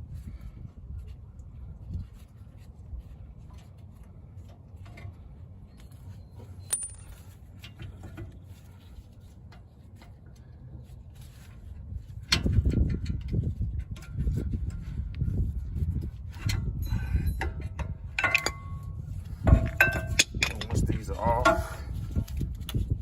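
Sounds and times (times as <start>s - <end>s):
low steady rumble: 0.0s - 23.0s
metal tools clinking: 6.4s - 7.8s, 18.2s - 18.9s, 19.6s - 21.8s.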